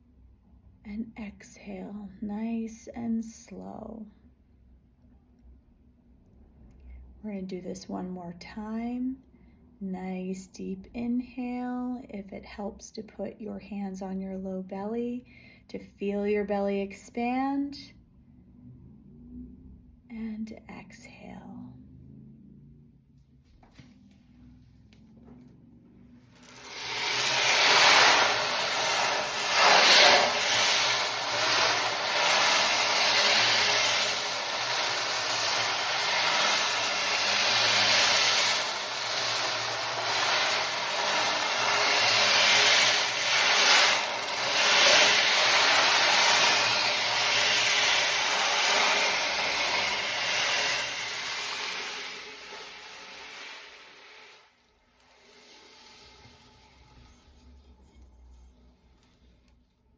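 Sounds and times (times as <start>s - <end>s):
percussion instrument swishing: 26.4s - 52.8s.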